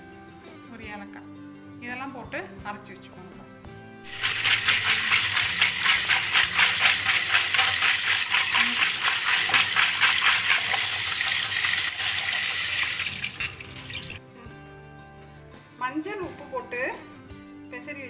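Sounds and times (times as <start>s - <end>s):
mixer grinder grinding: 4.0s - 14.2s.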